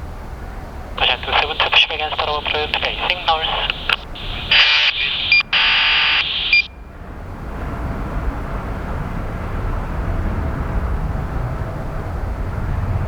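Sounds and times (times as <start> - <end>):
jet engine rumble: 0.8 - 13.0
radio channel steady tone: 1.0 - 6.7
short beeps: 1.0 - 6.8.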